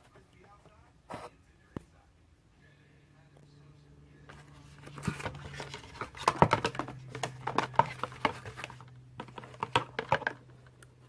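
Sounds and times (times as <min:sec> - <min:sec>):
low steady hum: 0:00.0 - 0:11.0
hands handling plastic packaging: 0:04.3 - 0:10.8.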